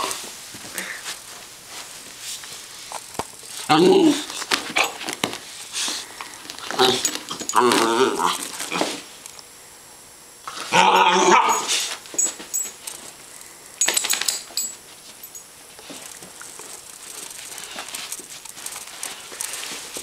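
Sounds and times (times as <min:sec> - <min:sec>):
puppy growling and barking: 0:06.6 - 0:09.1, 0:10.5 - 0:11.9.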